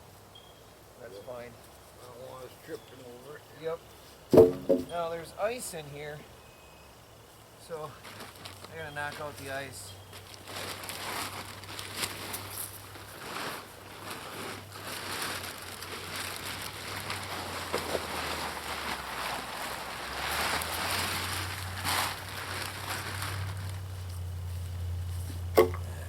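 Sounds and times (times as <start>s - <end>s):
ice rustling and scraping: 7.6s - 25.8s
steady low hum: 22.2s - 26.0s.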